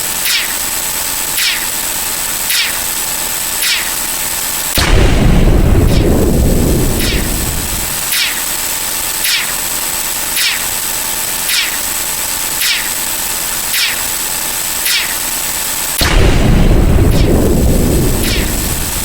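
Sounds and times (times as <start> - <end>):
steady hiss: 0.0 - 19.0
short downward chirps: 0.1 - 0.6, 1.4 - 1.7, 2.5 - 2.8, 3.6 - 4.0, 7.0 - 7.3, 8.1 - 8.4, 9.2 - 9.6, 10.4 - 10.8, 11.5 - 11.9, 12.6 - 13.0, 13.7 - 14.1, 14.8 - 15.3, 18.2 - 18.6
low rumbling boom: 4.8 - 8.0, 16.0 - 19.0.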